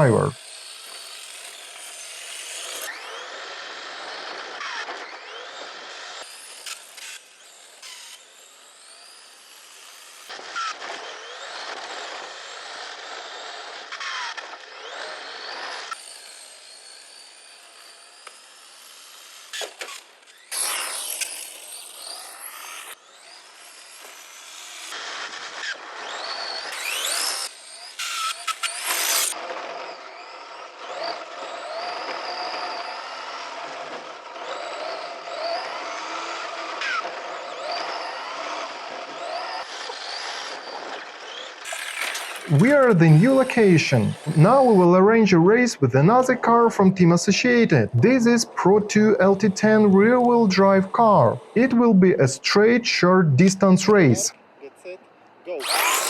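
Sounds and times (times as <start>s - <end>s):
rc car drivetrain whine: 0.0s - 46.6s, 54.2s - 56.0s.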